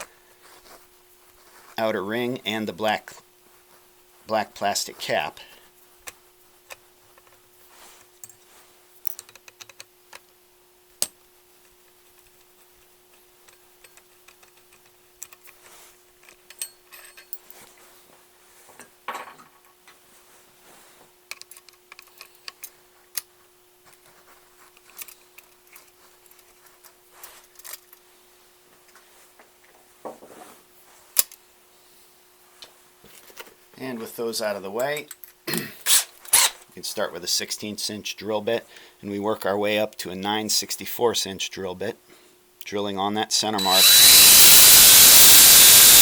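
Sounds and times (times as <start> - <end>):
faint steady hum: 0.0 - 46.0
small clicks and taps of parts: 9.0 - 10.4, 13.1 - 15.6, 21.3 - 23.3, 23.9 - 28.0, 31.2 - 31.4.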